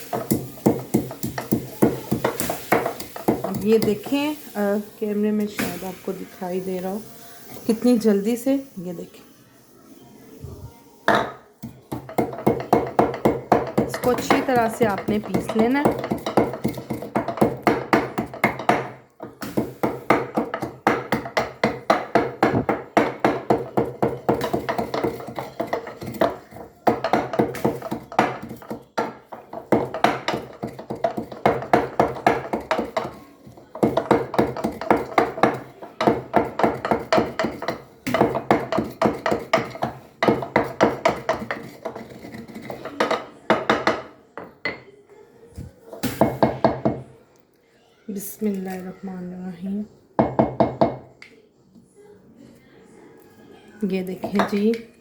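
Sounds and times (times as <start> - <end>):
pestle pounding in a mortar: 0.0 - 4.1, 11.1 - 44.8, 50.2 - 51.1.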